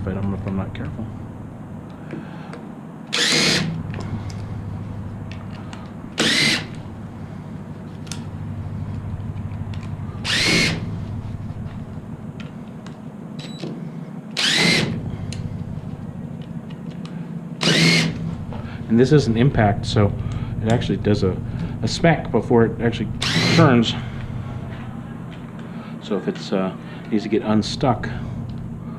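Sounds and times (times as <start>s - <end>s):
impact driver whining: 1.9s - 12.8s, 13.4s - 15.8s, 16.4s - 18.9s, 23.0s - 24.8s.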